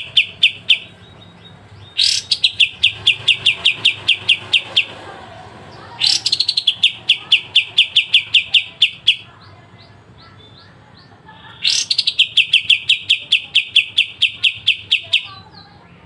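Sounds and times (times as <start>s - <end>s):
bird piercing rapid call: 0.0s - 5.1s, 5.8s - 10.8s, 11.6s - 15.7s.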